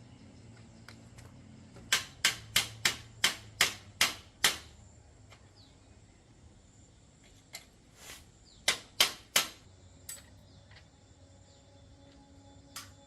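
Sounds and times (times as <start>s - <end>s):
hammer striking metal: 1.9s - 4.7s.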